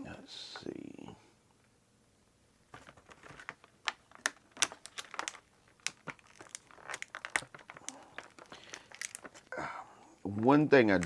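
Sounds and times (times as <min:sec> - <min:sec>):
plastic packaging crinkling: 0:02.7 - 0:09.6, 0:10.8 - 0:11.0.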